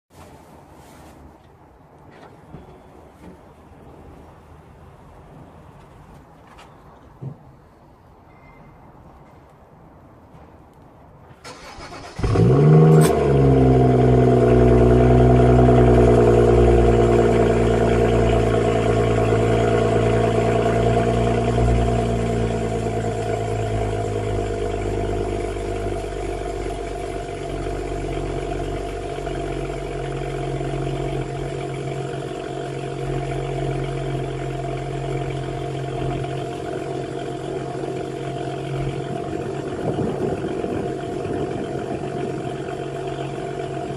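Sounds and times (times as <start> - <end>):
car engine starting and idling: 11.4 - 43.9.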